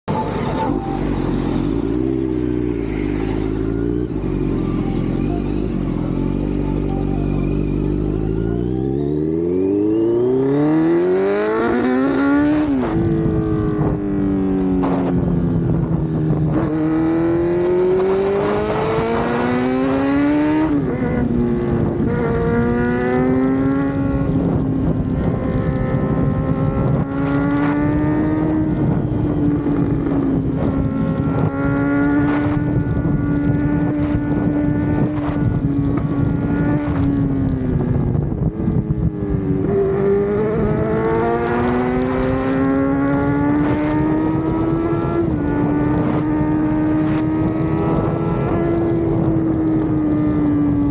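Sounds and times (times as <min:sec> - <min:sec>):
motorcycle engine running: 0:00.0 - 0:50.9.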